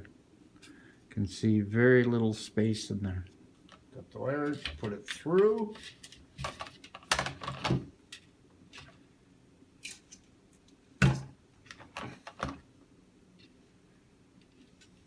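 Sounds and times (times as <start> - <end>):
plastic parts clicking and knocking: 4.6 - 8.2.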